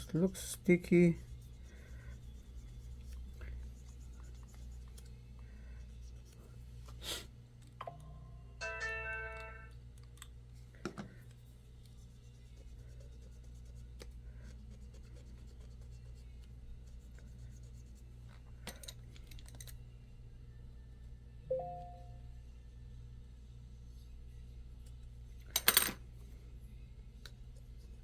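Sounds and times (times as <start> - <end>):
brief ringing tone: 21.5 - 22.3.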